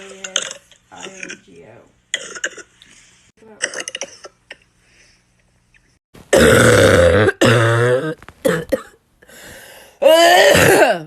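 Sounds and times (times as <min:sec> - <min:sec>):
woman barking cough: 0:03.5 - 0:04.4, 0:10.4 - 0:11.0.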